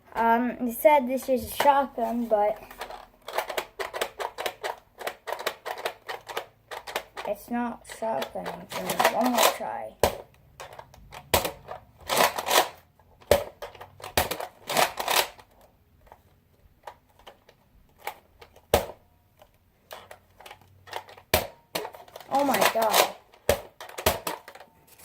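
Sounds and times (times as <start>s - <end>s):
toy blaster plastic clicks: 7.9s - 15.5s, 20.0s - 24.7s.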